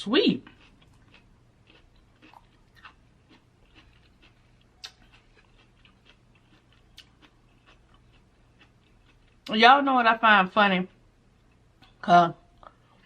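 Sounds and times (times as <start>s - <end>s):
chewing crunchy raw vegetable: 0.4s - 9.5s
wet mouth clicks: 4.7s - 5.2s.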